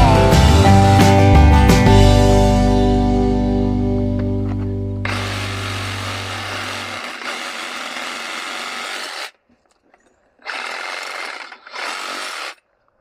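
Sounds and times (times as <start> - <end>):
hand-held power tool running: 5.1 - 9.4, 10.4 - 12.6.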